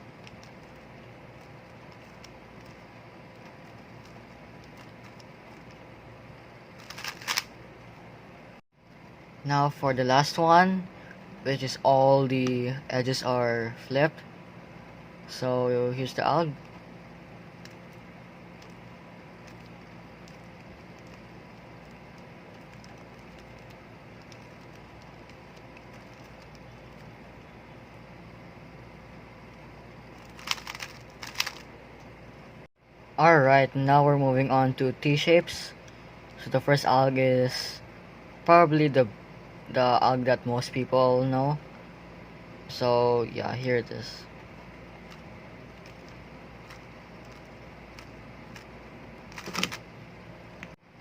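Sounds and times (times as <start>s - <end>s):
plastic puzzle cube clicking: 6.8s - 7.5s, 30.2s - 31.6s, 49.3s - 49.8s
puzzle cube layers clicking: 6.8s - 7.5s, 19.4s - 27.1s, 30.2s - 31.6s, 49.3s - 49.8s.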